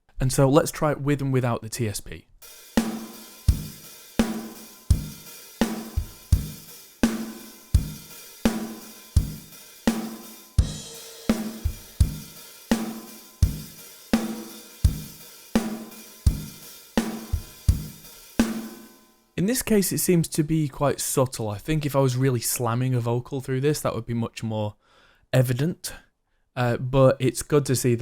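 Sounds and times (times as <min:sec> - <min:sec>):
drum kit beat: 0:02.4 - 0:19.1.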